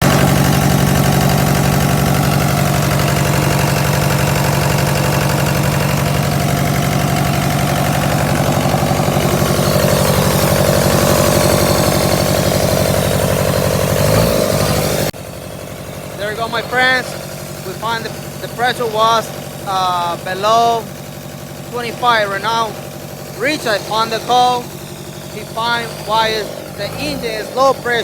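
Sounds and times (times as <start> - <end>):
diesel engine idling: 0.0 - 28.0.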